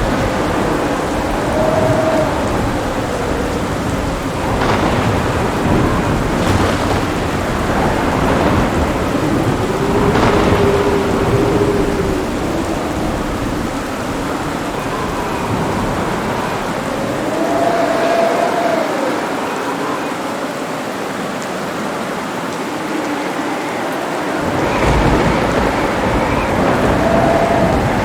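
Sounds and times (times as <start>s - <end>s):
sharp thunder cracks: 0.0s - 18.0s, 24.4s - 28.0s
rolling thunder: 0.0s - 20.3s, 22.0s - 28.0s
steady rain: 0.0s - 28.0s.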